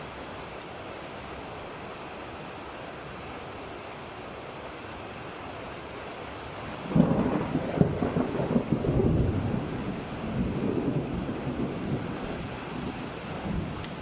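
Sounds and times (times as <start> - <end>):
steady rain: 0.0 - 14.0
thunder rumbling: 6.7 - 14.0.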